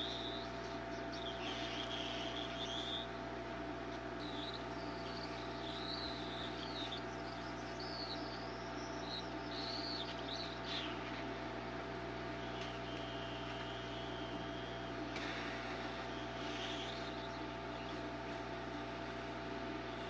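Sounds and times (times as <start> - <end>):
electrical machine hum: 0.0 - 20.0
thin high whistle: 12.4 - 14.9.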